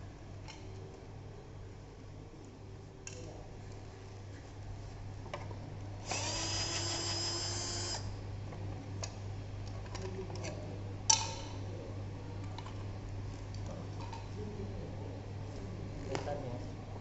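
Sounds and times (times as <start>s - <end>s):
electric screwdriver whine: 6.0s - 8.1s.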